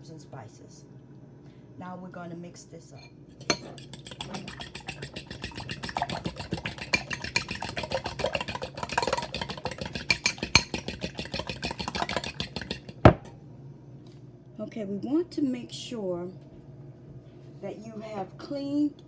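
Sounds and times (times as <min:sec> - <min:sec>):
utensil clicking against bowl: 0:03.4 - 0:13.0.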